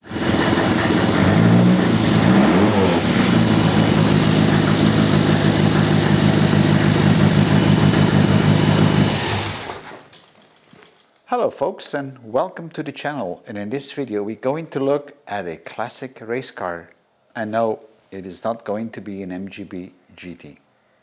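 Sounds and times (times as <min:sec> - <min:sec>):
race car engine revving: 0:00.0 - 0:10.0.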